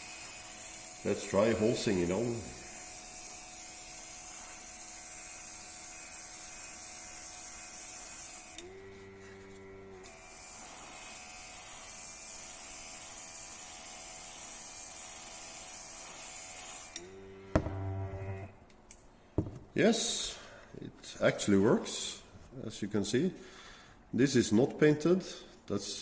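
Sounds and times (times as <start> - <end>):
airbrush spraying hiss: 0.0 - 8.6, 10.1 - 12.8
airbrush compressor motor hum: 0.0 - 18.6.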